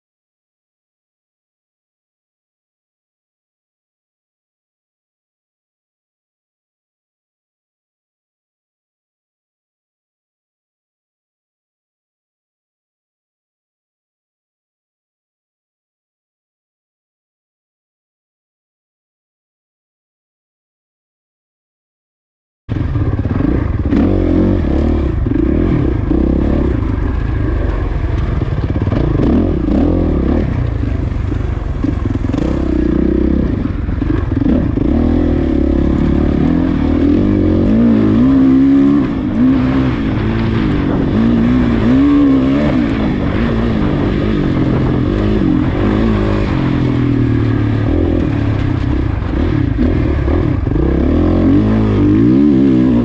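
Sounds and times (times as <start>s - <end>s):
dirt bike engine revving: 22.7s - 53.0s.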